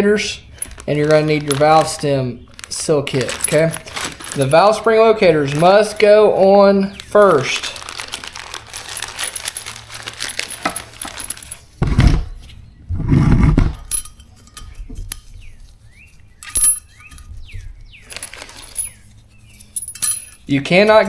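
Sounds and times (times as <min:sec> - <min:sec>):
small metal parts clinking: 0:00.2 - 0:06.2, 0:06.9 - 0:12.6, 0:13.7 - 0:21.0
dull thumps: 0:10.2 - 0:13.9.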